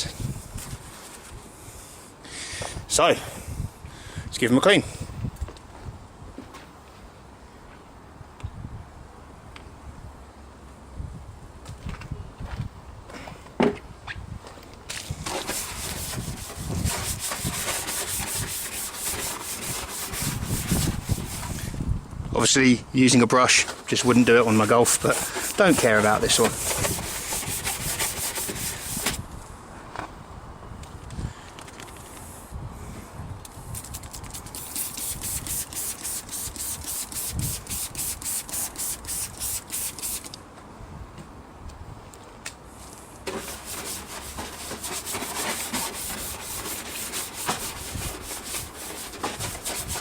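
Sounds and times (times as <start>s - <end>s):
brush scrubbing plastic: 15.2s - 21.7s, 23.5s - 29.2s, 33.8s - 40.3s, 43.3s - 50.0s.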